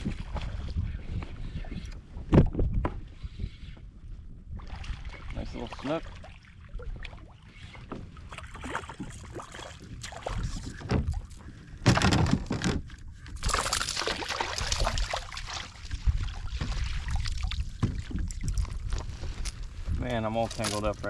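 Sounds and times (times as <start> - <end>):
water splashing around kayak: 4.5 - 19.0
fish thrashing in water: 13.3 - 18.7.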